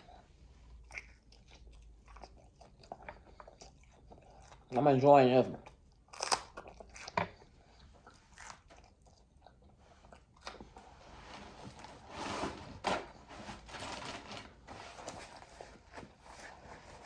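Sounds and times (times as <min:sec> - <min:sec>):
person chewing food: 0:00.0 - 0:04.8, 0:05.5 - 0:10.8.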